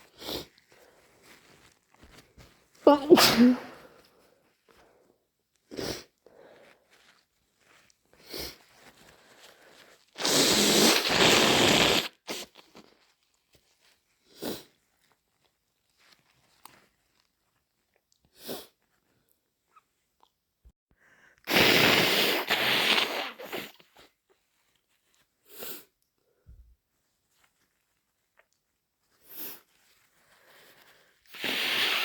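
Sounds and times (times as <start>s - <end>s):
person blowing nose: 0.0s - 0.6s, 2.9s - 4.0s, 5.7s - 6.4s, 8.2s - 12.9s, 14.3s - 14.7s, 21.4s - 24.1s, 30.4s - 32.0s
short nasal bursts: 2.9s - 3.8s, 10.2s - 12.8s, 21.4s - 24.1s, 31.3s - 32.0s.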